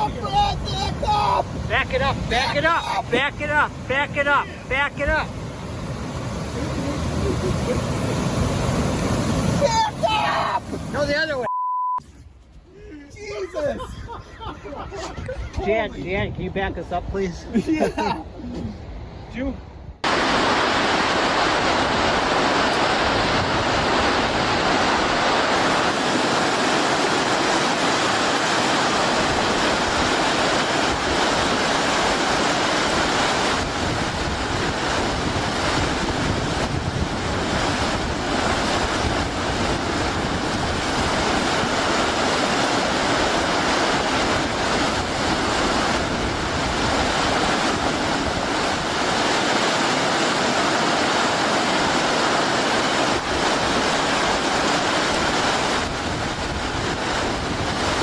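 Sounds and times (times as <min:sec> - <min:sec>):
steady rushing noise: 0:00.0 - 0:11.5, 0:19.0 - 0:58.0
wind buffeting microphone: 0:12.4 - 0:58.0.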